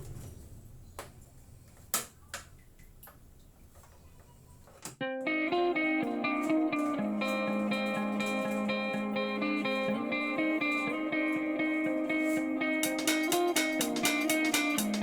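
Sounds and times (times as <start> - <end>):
plucked guitar music: 5.0 - 15.0.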